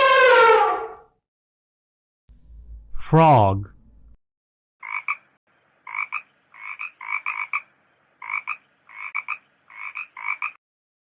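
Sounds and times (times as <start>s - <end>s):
frog croaking: 4.8s - 10.6s.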